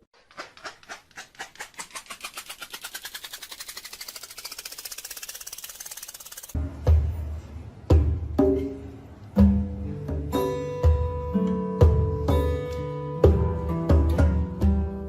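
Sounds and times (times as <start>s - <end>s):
rapid clicking: 0.2s - 6.6s.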